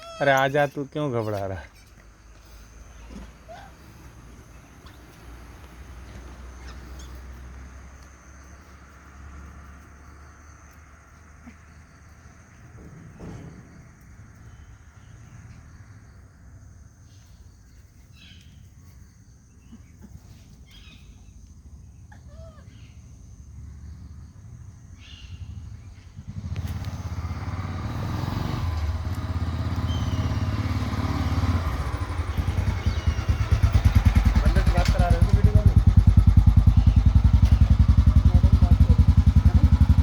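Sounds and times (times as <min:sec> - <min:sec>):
rustles: 0:00.0 - 0:23.1
vehicle engine humming: 0:00.2 - 0:16.9, 0:22.7 - 0:40.0.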